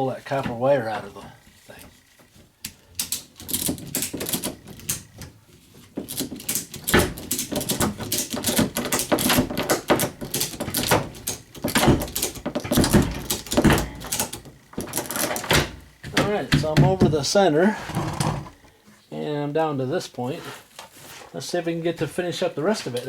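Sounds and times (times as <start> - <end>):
metal tubing clicking and rattling: 1.7 - 16.0.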